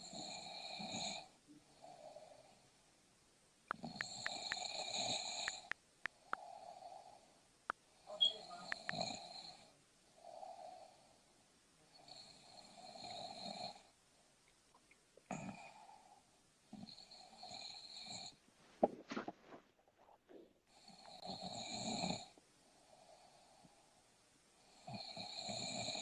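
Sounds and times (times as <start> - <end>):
sharp clicks: 3.7 - 4.7, 5.4 - 6.4, 8.2 - 9.1
person snoring: 3.7 - 7.3, 8.5 - 11.2, 11.9 - 13.9, 20.7 - 23.8, 24.6 - 26.0.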